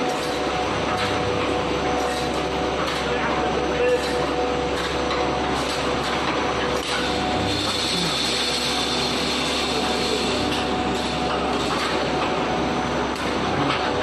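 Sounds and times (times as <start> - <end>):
constant machine hum: 0.0 - 14.0.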